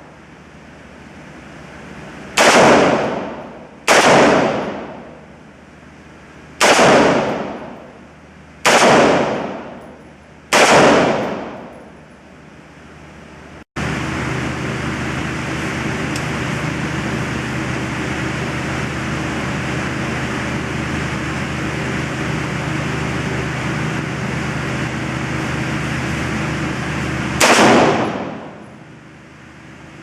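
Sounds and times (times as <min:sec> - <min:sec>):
gunshots ringing out: 0:02.4 - 0:05.3, 0:06.6 - 0:08.0, 0:08.6 - 0:11.9, 0:27.4 - 0:28.8.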